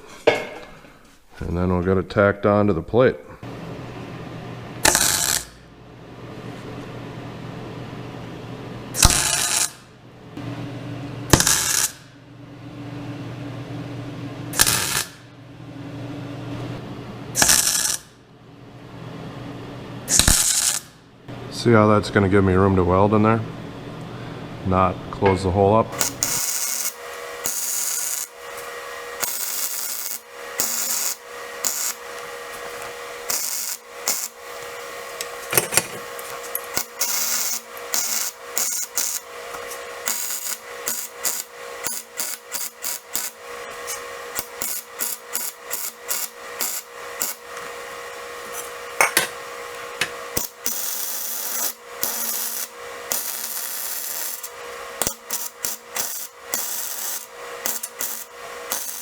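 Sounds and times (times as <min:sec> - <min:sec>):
welder hum: 0:03.4 - 0:06.8, 0:09.0 - 0:12.2, 0:14.5 - 0:15.3, 0:17.3 - 0:18.2, 0:20.1 - 0:21.0, 0:25.9 - 0:59.0
crackling arc welding bursts: 0:04.8 - 0:05.6, 0:09.0 - 0:09.8, 0:11.3 - 0:12.0, 0:14.5 - 0:15.2, 0:17.4 - 0:18.1, 0:20.1 - 0:21.0, 0:25.9 - 0:59.0.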